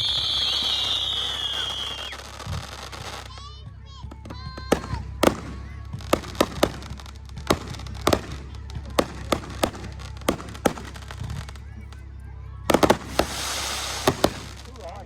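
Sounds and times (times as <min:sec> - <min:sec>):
fireworks bangs and cracks: 0:00.0 - 0:12.0, 0:12.7 - 0:15.0.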